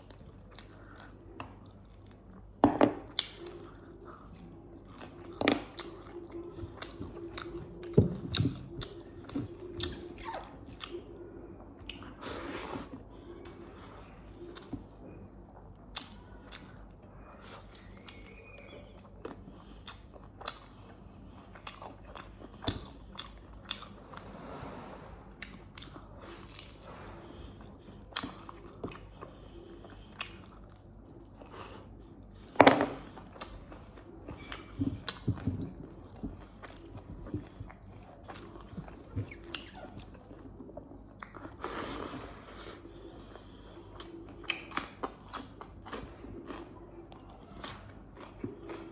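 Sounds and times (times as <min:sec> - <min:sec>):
chewing and wet mouth clicks: 0:03.1 - 0:11.1, 0:17.4 - 0:23.9, 0:44.0 - 0:48.5.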